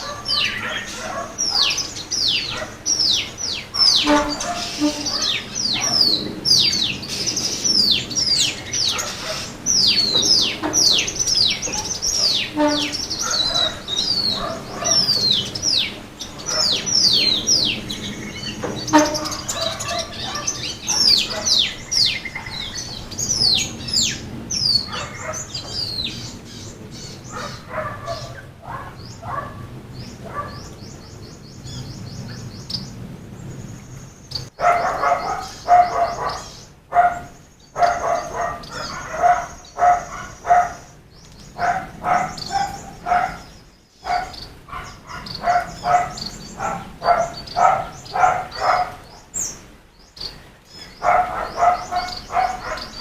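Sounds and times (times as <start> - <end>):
dog barking: 0.0 - 2.9, 3.8 - 6.2, 8.8 - 15.5, 16.4 - 16.9, 18.9 - 21.8, 24.8 - 25.8, 27.3 - 30.7, 34.6 - 49.2, 51.0 - 53.0
small birds chirping: 0.0 - 53.0.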